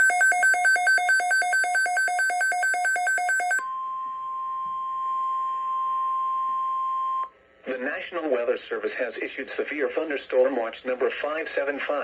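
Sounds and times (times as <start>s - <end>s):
steady alarm tone: 0.0s - 6.4s.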